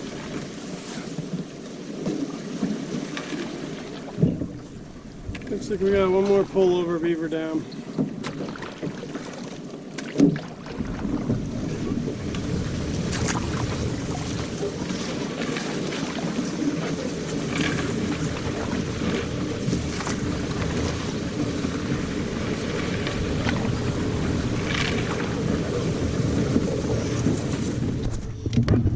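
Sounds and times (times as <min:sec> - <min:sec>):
water sloshing around canoe: 0:00.0 - 0:28.9
wind on microphone: 0:04.0 - 0:07.5, 0:10.6 - 0:28.9
sharp splashes or knocks: 0:07.9 - 0:16.4.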